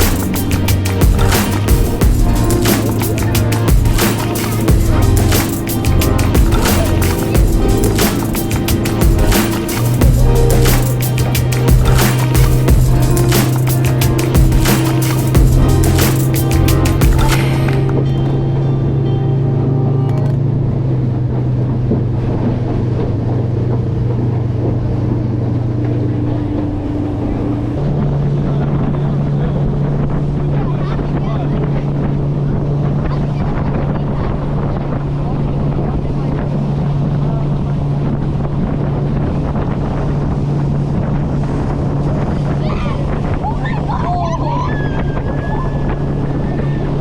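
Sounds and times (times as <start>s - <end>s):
outboard motor running: 0.0s - 18.6s.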